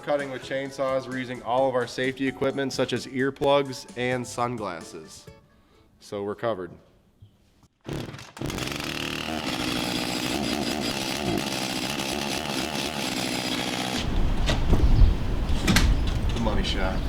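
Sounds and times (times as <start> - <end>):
chainsaw starting and revving: 7.8 - 14.2.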